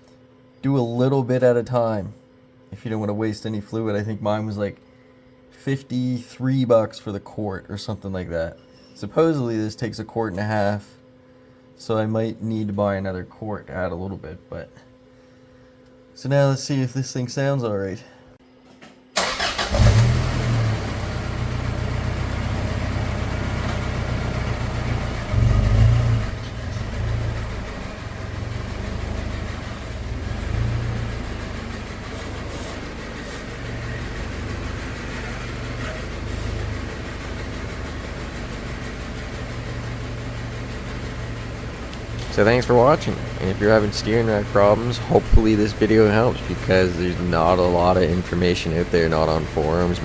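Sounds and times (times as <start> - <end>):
car engine starting and idling: 19.2 - 50.0.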